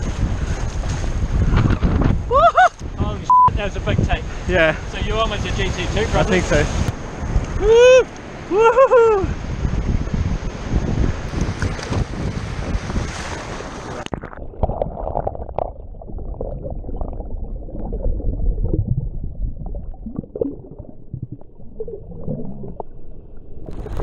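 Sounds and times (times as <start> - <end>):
wind: 0.0 - 14.6
surf: 0.0 - 15.7
underwater gurgling and bubbling: 14.0 - 24.0.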